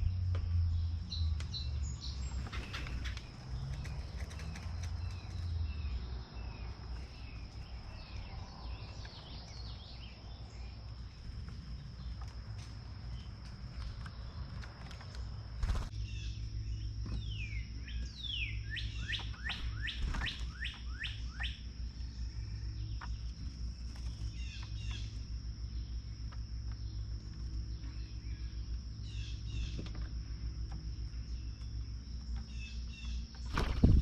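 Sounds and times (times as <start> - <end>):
songbirds whistling and chirping: 15.9 - 23.4, 24.0 - 34.0.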